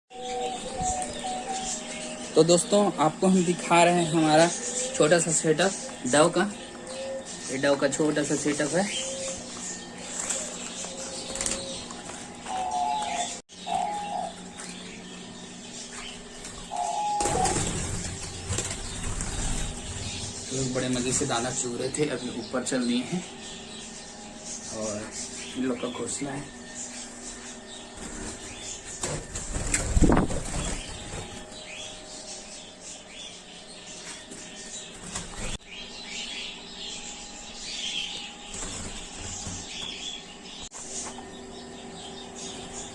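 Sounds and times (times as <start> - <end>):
birds chirping: 0.1 - 42.9
doves fluttering wings: 8.0 - 13.4, 14.1 - 21.6, 27.5 - 31.9, 38.3 - 40.1.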